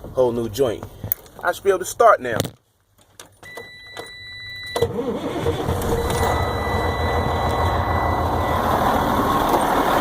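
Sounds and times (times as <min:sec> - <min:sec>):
diesel truck engine starting and running: 0:04.1 - 0:10.0.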